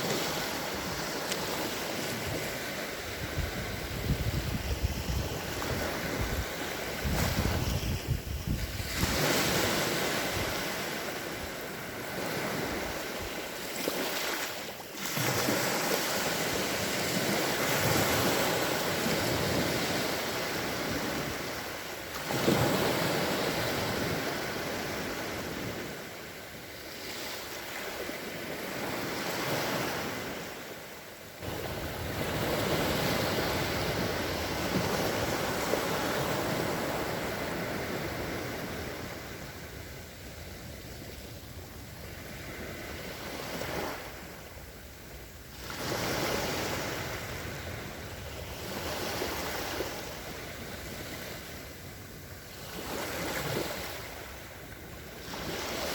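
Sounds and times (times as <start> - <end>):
small waves washing onto shore: 0.0 - 55.9
wind buffeting microphone: 1.9 - 10.9.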